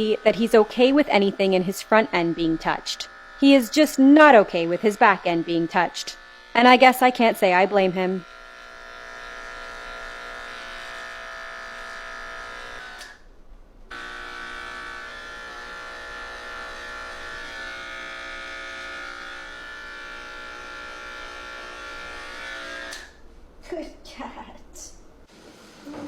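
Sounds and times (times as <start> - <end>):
electric pet clippers buzzing: 0.0 - 13.3, 13.9 - 23.2.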